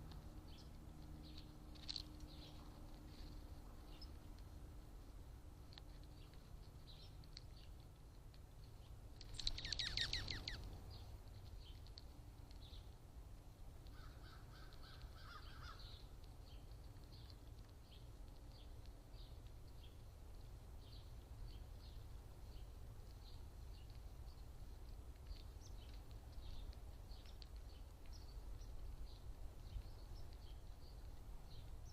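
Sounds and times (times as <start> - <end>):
soft high bird chips: 8.6 - 13.0.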